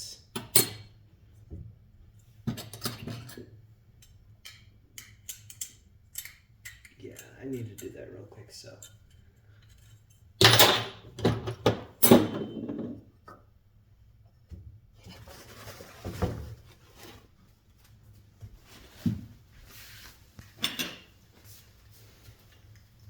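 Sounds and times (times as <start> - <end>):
tools clattering on workbench: 10.4 - 13.0, 20.6 - 21.2.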